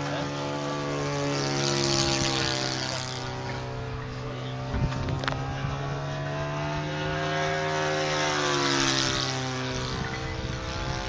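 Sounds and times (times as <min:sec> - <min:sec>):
model plane propeller engine: 0:00.0 - 0:11.0
steady low hum: 0:00.0 - 0:11.0.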